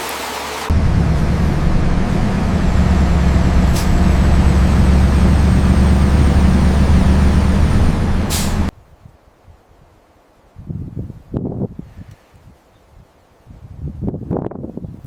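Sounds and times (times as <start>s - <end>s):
bus engine rumbling: 0.6s - 8.7s.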